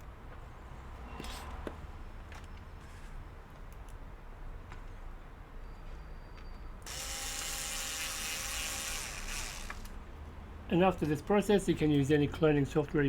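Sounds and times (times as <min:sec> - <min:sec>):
small electric motor whirring: 0:06.8 - 0:10.0.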